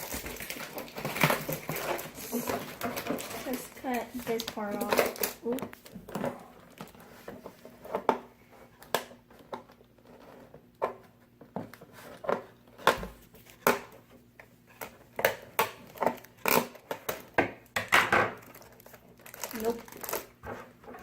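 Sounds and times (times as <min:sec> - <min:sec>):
plastic packaging rustling: 0:00.0 - 0:10.6, 0:18.3 - 0:21.0.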